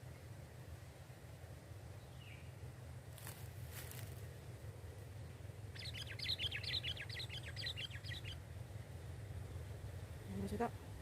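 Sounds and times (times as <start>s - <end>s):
steady low rumble: 0.0s - 11.0s
bird chattering call: 5.8s - 8.4s.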